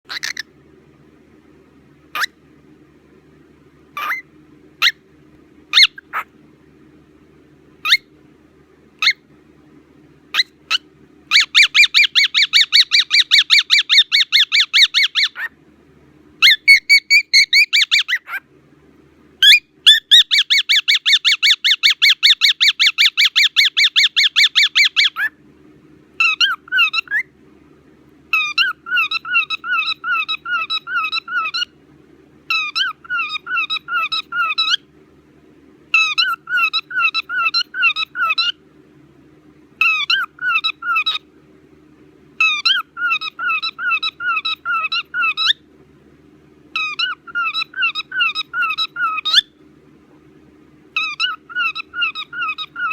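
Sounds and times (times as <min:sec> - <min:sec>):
faint steady hum: 0:00.0 - 0:52.9
bird squawking and chattering: 0:00.1 - 0:00.5, 0:02.1 - 0:02.4, 0:04.0 - 0:05.0, 0:05.7 - 0:06.3, 0:07.8 - 0:08.1, 0:09.0 - 0:09.2, 0:10.3 - 0:15.5, 0:16.4 - 0:18.4, 0:19.4 - 0:25.3, 0:26.2 - 0:27.3, 0:28.3 - 0:31.7, 0:32.5 - 0:34.8, 0:35.9 - 0:38.6, 0:39.8 - 0:41.2, 0:42.4 - 0:45.6, 0:46.8 - 0:49.5, 0:51.0 - 0:52.9.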